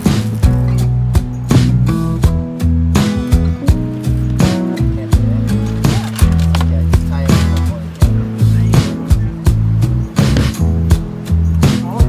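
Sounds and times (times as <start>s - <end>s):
drum hits: 0.0s - 12.0s
held bass line: 0.0s - 12.0s.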